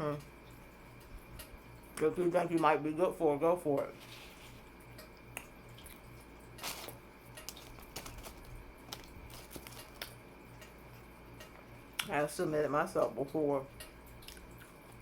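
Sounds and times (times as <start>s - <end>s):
chewing and wet mouth clicks: 5.0s - 8.0s, 8.9s - 10.8s, 13.8s - 15.0s.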